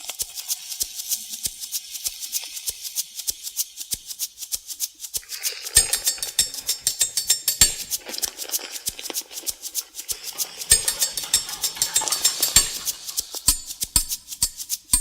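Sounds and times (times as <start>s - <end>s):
cutlery clinking percussive beat: 5.2s - 15.0s.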